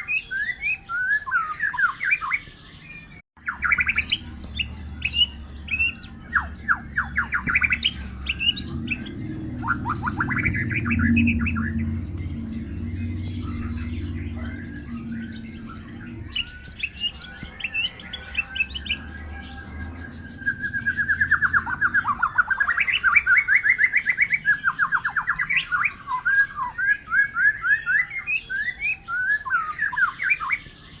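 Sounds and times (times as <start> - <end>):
songbird whistling: 0.0 - 31.0.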